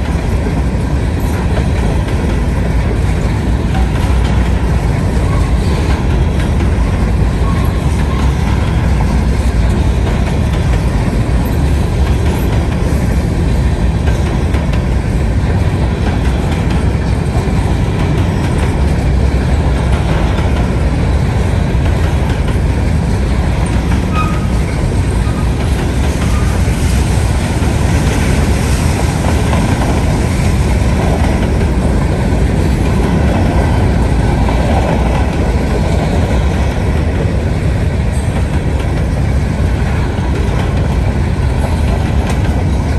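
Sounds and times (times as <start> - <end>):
clatter over rail joints: 0.0 - 42.9
train wheels rumbling on rail: 0.0 - 42.9
faint wheel squeaks: 23.9 - 27.2.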